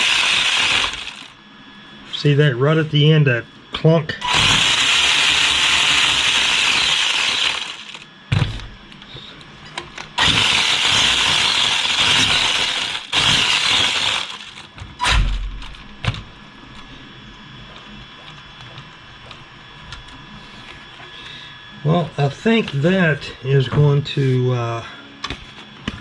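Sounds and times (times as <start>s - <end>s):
electric motor whirring: 0.0s - 1.4s, 4.2s - 8.1s, 10.2s - 15.2s.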